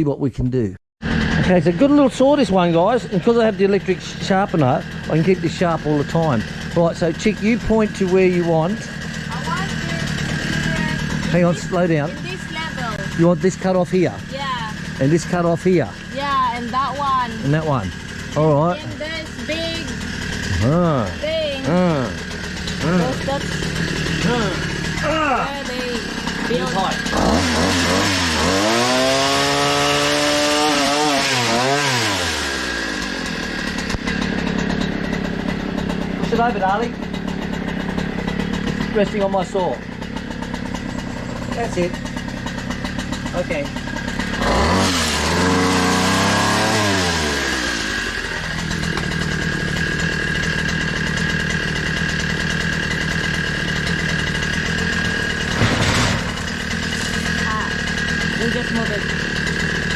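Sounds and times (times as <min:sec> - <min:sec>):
two-stroke chainsaw engine revving: 0:01.0 - 0:59.9.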